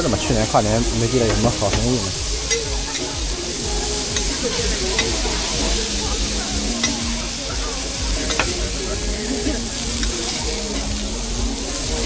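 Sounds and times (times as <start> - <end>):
food sizzling on a griddle: 0.0 - 12.0.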